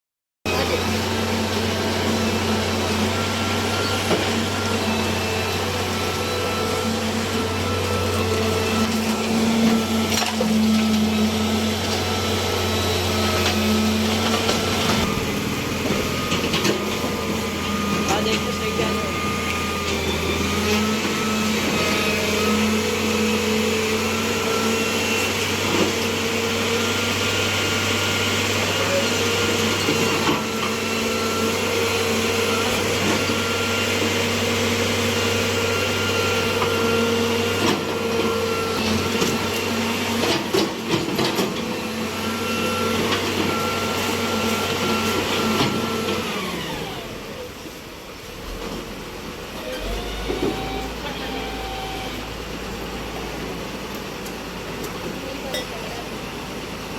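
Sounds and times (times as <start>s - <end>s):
road cutting machine whining: 0.5s - 56.9s.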